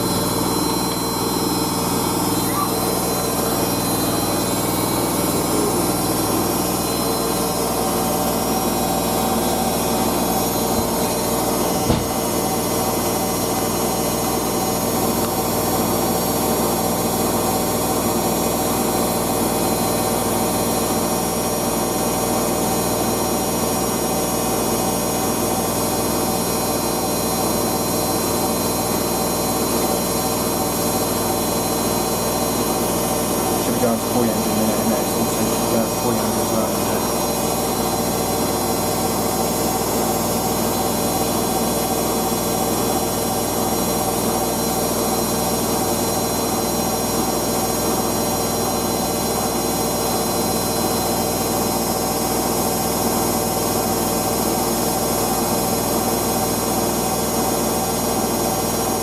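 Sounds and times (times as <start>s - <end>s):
washing machine spinning: 0.0s - 59.0s
washing machine knock: 10.6s - 12.5s.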